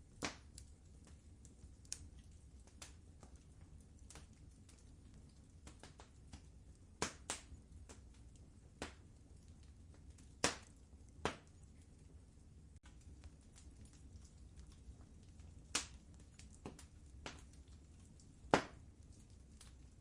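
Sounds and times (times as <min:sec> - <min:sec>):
low steady hiss: 0:00.0 - 0:20.0
wood fire crackling: 0:00.0 - 0:20.0.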